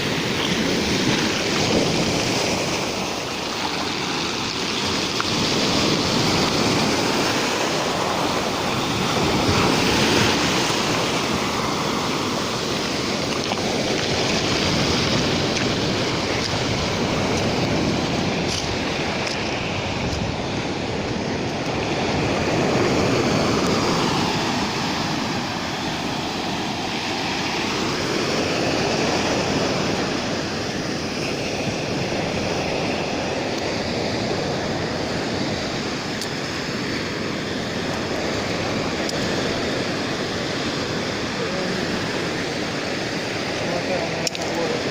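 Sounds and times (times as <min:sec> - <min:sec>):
rough sea waves breaking on shore: 0:00.0 - 0:44.9.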